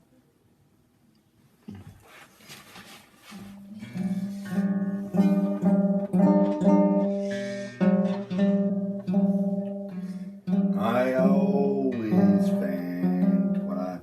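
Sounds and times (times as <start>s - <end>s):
acoustic guitar strumming chords: 3.4s - 14.0s.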